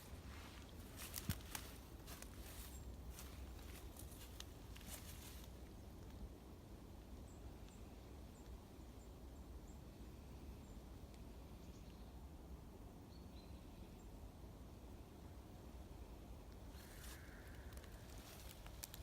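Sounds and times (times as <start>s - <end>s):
dry rustling crackles: 0.0s - 6.2s, 16.7s - 19.0s.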